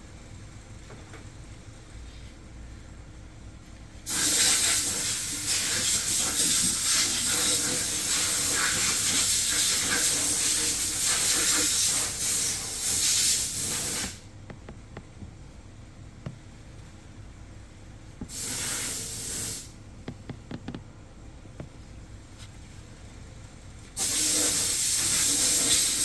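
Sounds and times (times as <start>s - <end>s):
pressurized spray hissing: 4.1s - 14.2s, 18.3s - 19.7s, 24.0s - 26.0s.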